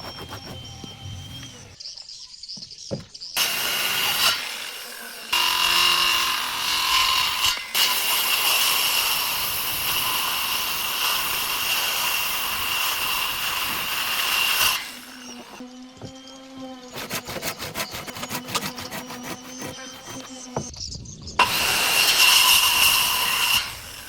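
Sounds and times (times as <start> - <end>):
power tool whining on wood: 0.0 - 1.8, 3.4 - 20.7.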